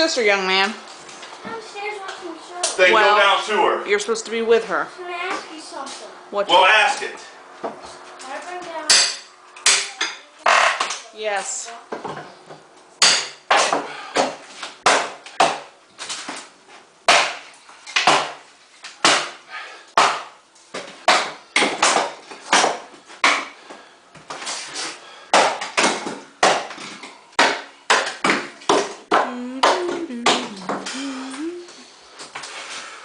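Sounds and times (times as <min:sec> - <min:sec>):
sledgehammer blows on wooden wall: 0:21.0 - 0:23.6.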